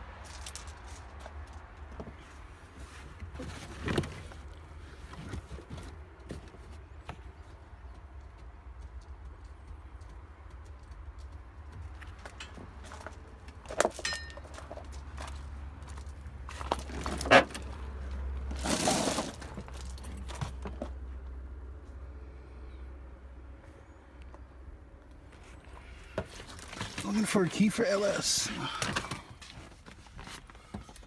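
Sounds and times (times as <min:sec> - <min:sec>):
clicks and knocks of car parts: 0:12.0 - 0:17.8
rustling scrape: 0:18.4 - 0:20.4.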